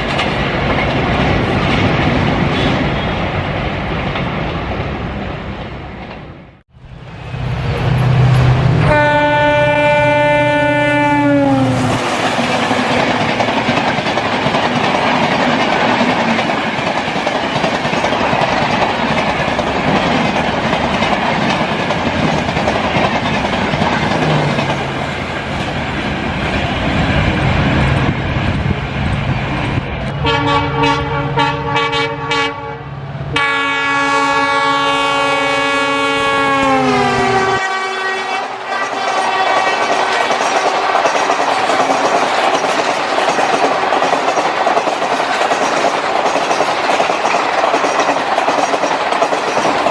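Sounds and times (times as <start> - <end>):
train coaches running over rails: 0.0 - 49.9
locomotive horn: 8.7 - 13.5, 30.1 - 40.2.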